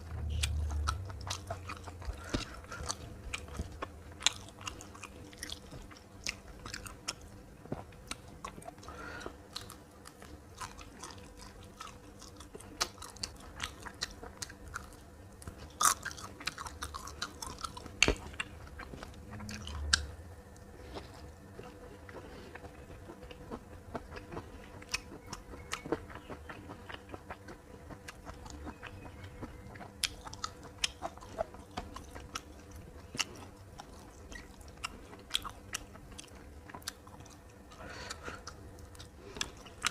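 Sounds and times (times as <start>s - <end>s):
chewing and crunching food: 0.0s - 39.9s.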